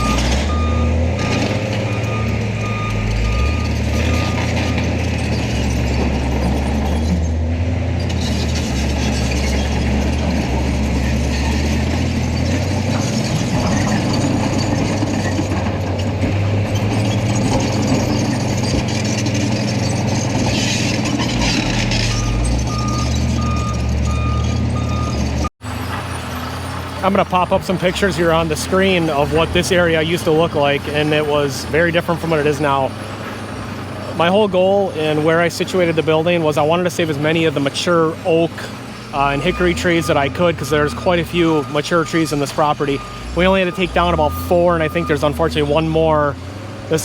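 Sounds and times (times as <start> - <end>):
back-up alarm beeping: 0.0 - 4.9, 22.1 - 25.2, 39.2 - 45.3
diesel engine running: 0.0 - 47.0.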